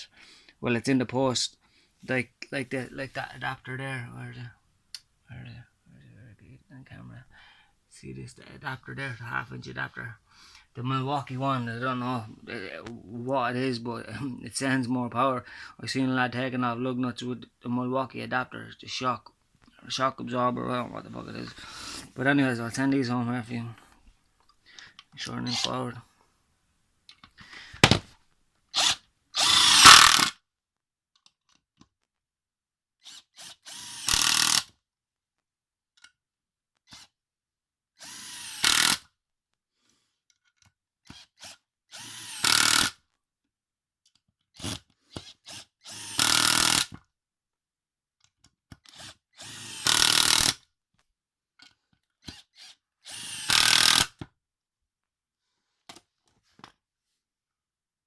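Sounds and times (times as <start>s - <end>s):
impact driver driving screws: 27.8s - 28.1s, 28.8s - 30.4s, 33.0s - 34.7s, 36.9s - 37.1s, 38.0s - 39.1s, 41.1s - 43.0s, 44.6s - 47.0s, 48.8s - 50.6s, 52.2s - 54.2s.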